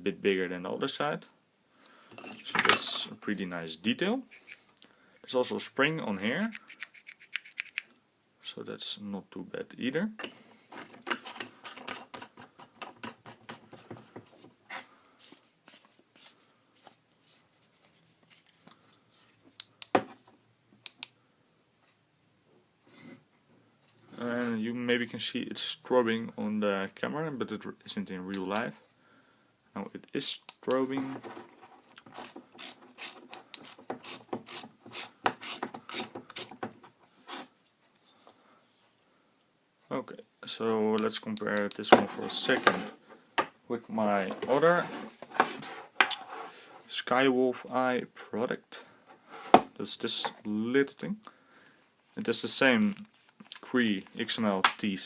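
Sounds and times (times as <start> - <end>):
scraping of flashlight: 2.1 - 2.6, 4.3 - 4.7
metal parts scratchy clicks: 6.5 - 7.9, 32.0 - 36.6.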